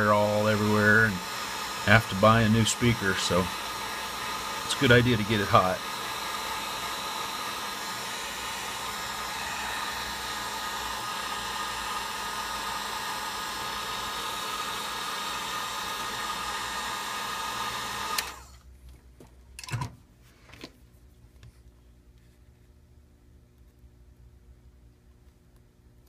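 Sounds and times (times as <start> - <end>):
hot-air blower running: 0.0 - 18.7.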